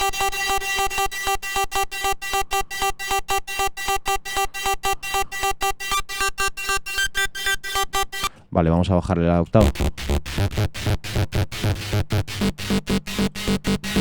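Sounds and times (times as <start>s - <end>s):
buzzy distorted synth stabs: 9.6s - 14.0s.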